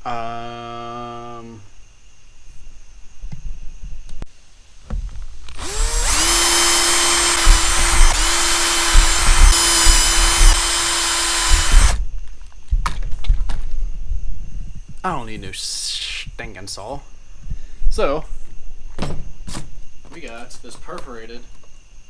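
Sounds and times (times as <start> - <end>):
power drill drilling: 5.5 - 12.0.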